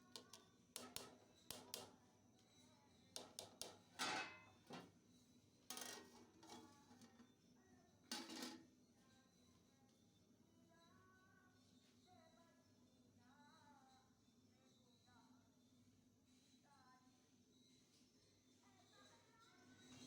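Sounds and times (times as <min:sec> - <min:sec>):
metal utensils clinking on pot: 0:03.2 - 0:04.9, 0:08.1 - 0:08.6.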